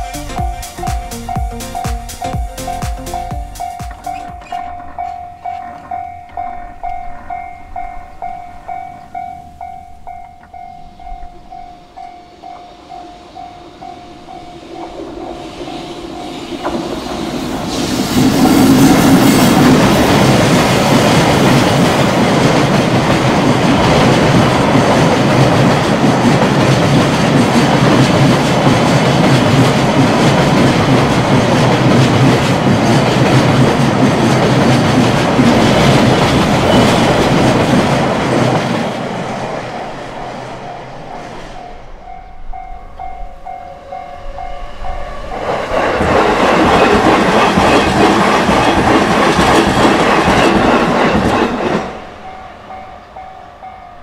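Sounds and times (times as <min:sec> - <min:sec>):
level crossing warning bell: 0:00.0 - 0:16.6, 0:41.6 - 0:45.6, 0:52.1 - 0:54.0
train wheels clattering: 0:00.0 - 0:40.8, 0:45.3 - 0:52.4
train passing: 0:00.0 - 0:54.0.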